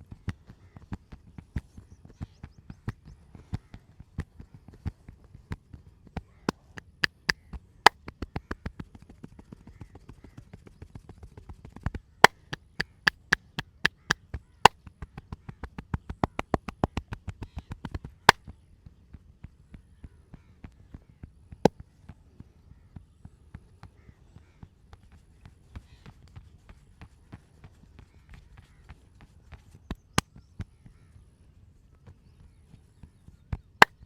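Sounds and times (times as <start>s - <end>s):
massage hands slapping body: 6.5s - 8.6s, 12.2s - 14.2s, 15.2s - 17.4s.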